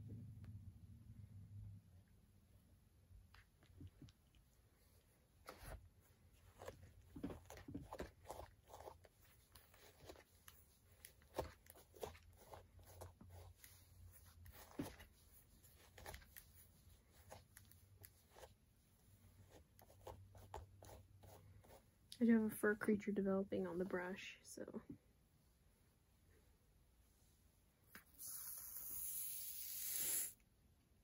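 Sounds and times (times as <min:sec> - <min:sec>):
hairbrush strokes through hair: 0:28.0 - 0:30.4.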